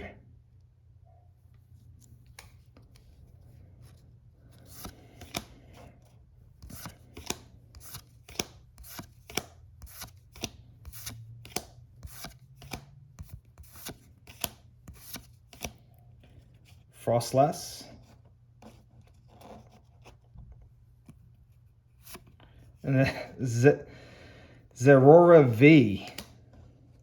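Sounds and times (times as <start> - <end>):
trading cards flipped snapping: 4.6 - 5.5, 6.6 - 15.8, 26.1 - 26.4.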